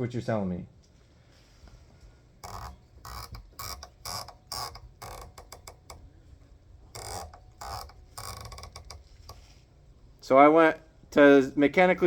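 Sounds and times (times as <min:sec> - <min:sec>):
scope turret ratcheting clicks: 0:02.4 - 0:09.5.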